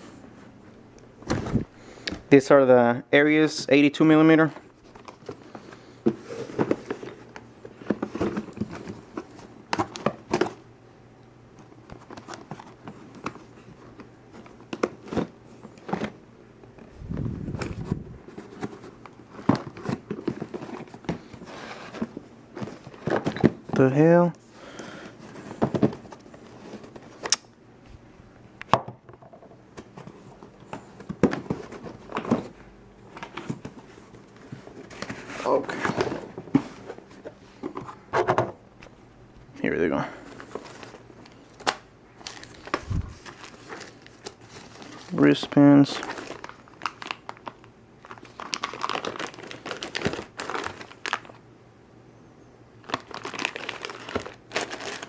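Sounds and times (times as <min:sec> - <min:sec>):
packaging rustling: 0:11.9 - 0:23.9, 0:40.2 - 0:51.4, 0:52.8 - 0:55.0.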